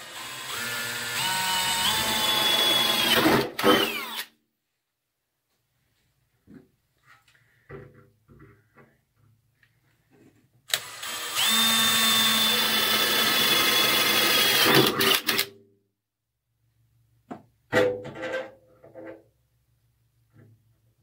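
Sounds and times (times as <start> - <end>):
electric drill drilling into metal: 0.0 - 4.3, 10.7 - 15.5.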